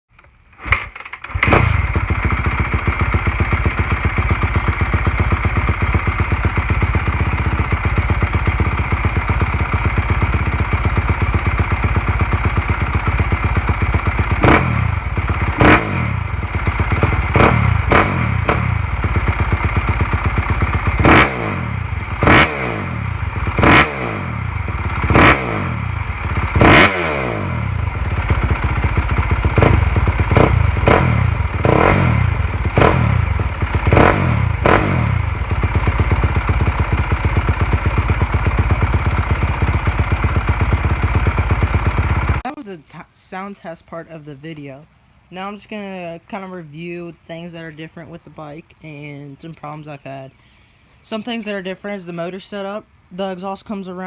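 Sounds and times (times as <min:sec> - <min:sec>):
engine throttle blips: 0:00.1 - 0:42.8
motocross engine idling: 0:00.2 - 0:42.6.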